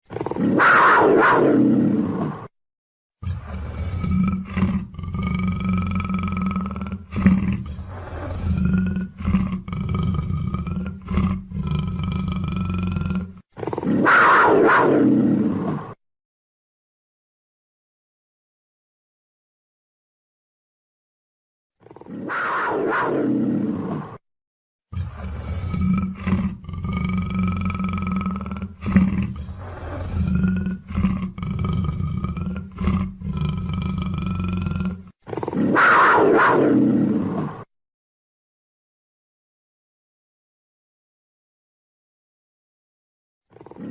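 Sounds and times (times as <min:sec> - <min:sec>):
big cat growling: 0:00.0 - 0:02.5, 0:03.2 - 0:16.0, 0:21.8 - 0:24.2, 0:24.9 - 0:37.7, 0:43.5 - 0:43.9
big cat roaring: 0:00.0 - 0:02.5, 0:03.2 - 0:16.0, 0:21.8 - 0:24.2, 0:24.9 - 0:37.7, 0:43.5 - 0:43.9.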